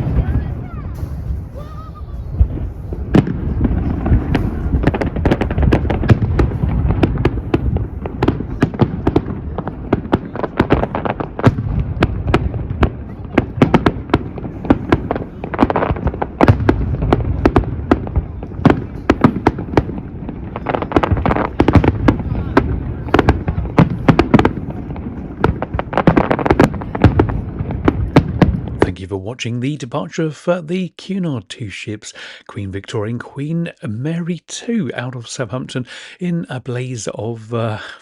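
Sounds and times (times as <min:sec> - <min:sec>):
low rumble: 0:00.0 - 0:21.2
fireworks bangs and crackles: 0:00.0 - 0:30.3.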